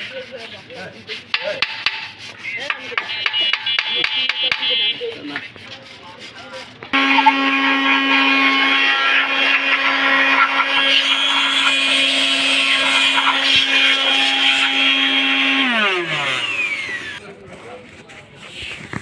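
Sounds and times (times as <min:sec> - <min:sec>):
electric motor humming: 0:07.0 - 0:17.2.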